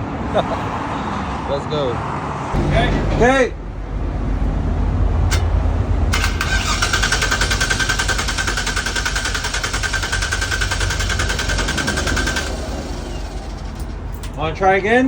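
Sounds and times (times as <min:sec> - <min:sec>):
traffic rumble: 0:00.0 - 0:15.0
engine cranking without starting: 0:05.2 - 0:14.8.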